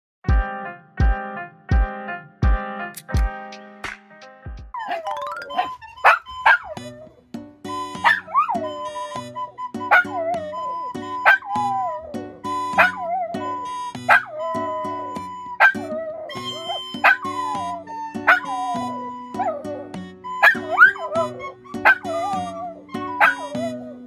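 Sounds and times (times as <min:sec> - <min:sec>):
background music: 0:00.3 - 0:24.0
dog barking and howling: 0:04.8 - 0:07.2, 0:08.0 - 0:09.1, 0:09.9 - 0:12.2, 0:12.8 - 0:13.5, 0:14.1 - 0:19.8, 0:20.4 - 0:24.0
recorder high note: 0:16.3 - 0:18.4.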